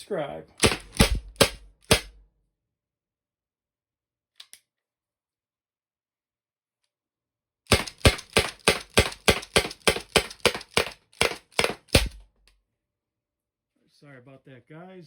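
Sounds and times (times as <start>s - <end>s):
launcher firing sharp pops: 0.6s - 2.2s, 7.7s - 12.3s.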